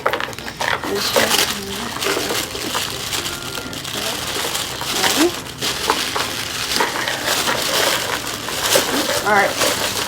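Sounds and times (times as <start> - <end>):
packaging crinkling and rustling: 0.0 - 10.0.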